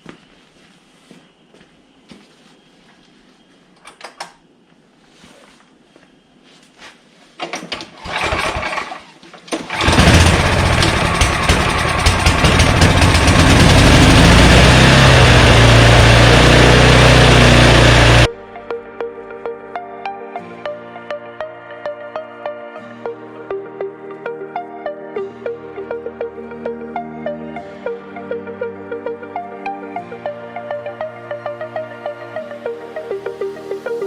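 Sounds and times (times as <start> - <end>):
engine cranking: 7.4 - 18.3
snow blower engine running: 8.0 - 18.3.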